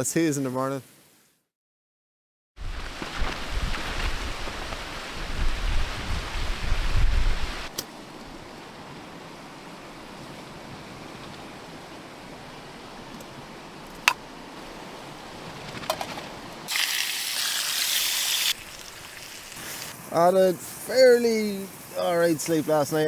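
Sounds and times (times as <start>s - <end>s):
loud bright hiss: 16.7s - 23.0s.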